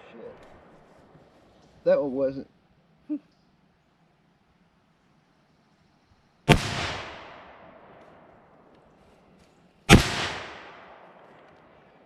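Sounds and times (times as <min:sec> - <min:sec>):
rifle shots with echo: 0:06.5 - 0:08.7, 0:09.9 - 0:12.0.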